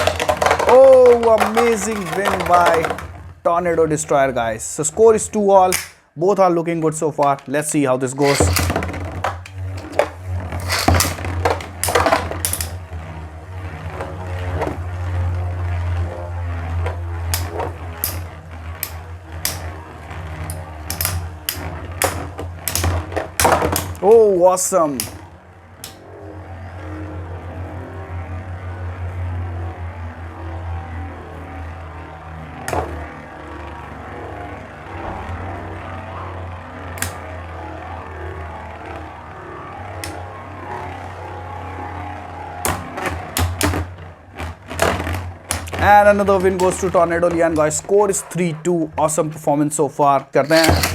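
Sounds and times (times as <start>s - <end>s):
tops clacking: 0.0s - 3.8s, 5.6s - 6.0s, 8.2s - 12.9s, 16.8s - 19.8s, 20.4s - 26.0s, 40.0s - 40.2s, 42.6s - 49.6s, 50.2s - 50.9s
spinning tops whirring: 0.0s - 6.0s, 7.2s - 26.0s, 35.7s - 50.9s
low hum: 7.0s - 50.9s.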